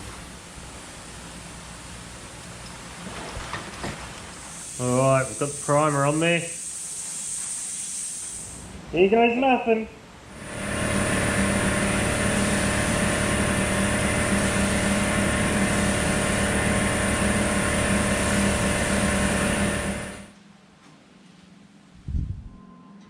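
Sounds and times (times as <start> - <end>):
paint sprayer motor hum: 10.3 - 20.3.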